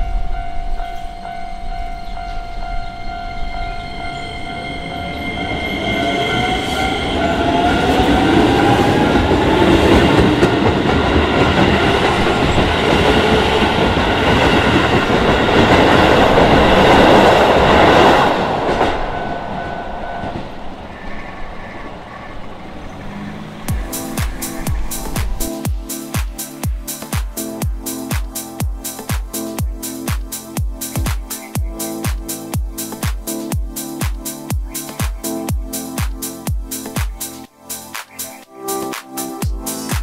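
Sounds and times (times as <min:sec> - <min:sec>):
crossing warning bell: 0:00.0 - 0:18.1
train wheels on rails: 0:00.0 - 0:40.0.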